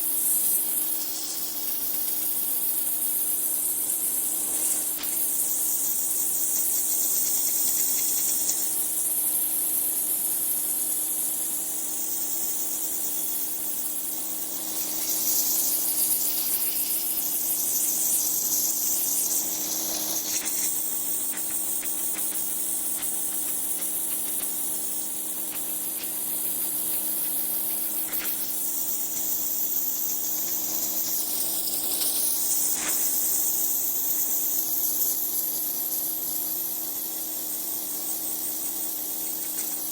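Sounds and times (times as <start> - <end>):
pressure washer water jet hissing: 14.4 - 34.6.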